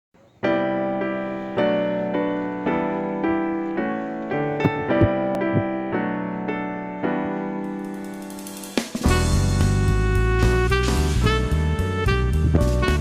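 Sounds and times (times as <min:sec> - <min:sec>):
piano-like keyboard chords: 0:00.4 - 0:07.7
soft knocks: 0:03.8 - 0:05.8.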